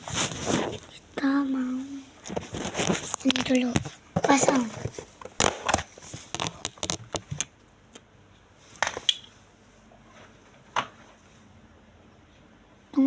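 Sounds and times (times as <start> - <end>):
crinkling handling noise: 0.0 - 1.0, 2.2 - 7.6.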